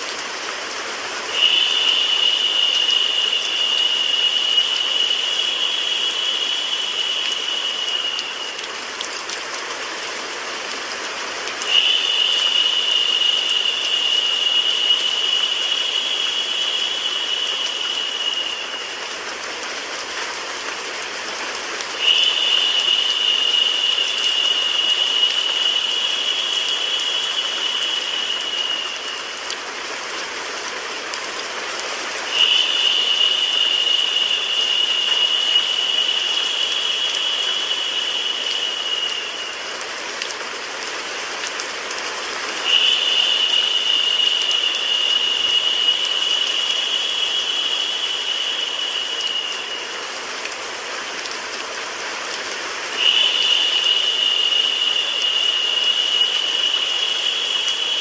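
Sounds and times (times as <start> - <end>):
rain hiss: 0.0 - 58.0
bright high hiss: 1.3 - 8.8, 11.6 - 19.2, 22.0 - 29.4, 32.3 - 39.8, 42.6 - 50.2, 53.0 - 58.0.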